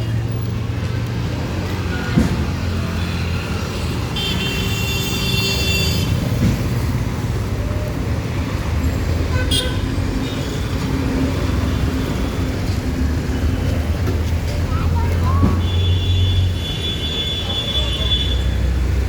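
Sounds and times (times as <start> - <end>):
road traffic rumble: 0.0 - 19.0.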